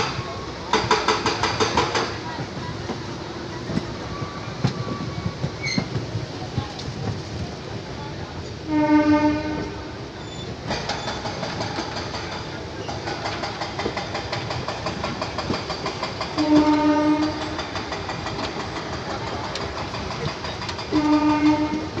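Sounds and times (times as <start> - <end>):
rail traffic and machinery noise: 0.0 - 22.0
train horn blasts: 8.6 - 10.0, 16.4 - 17.6, 20.9 - 22.0.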